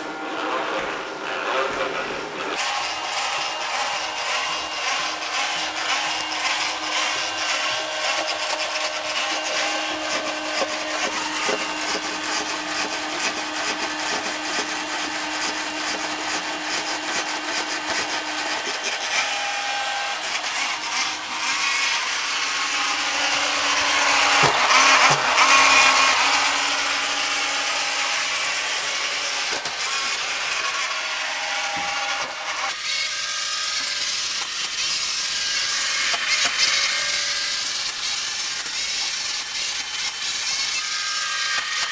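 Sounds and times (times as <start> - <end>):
robot vacuum cleaner running: 0.0 - 31.0.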